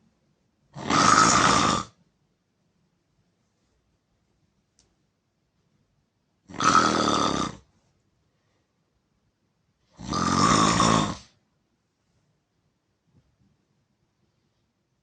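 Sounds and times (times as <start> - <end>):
person snoring loudly: 0.8 - 2.0, 6.5 - 7.7, 10.0 - 11.4.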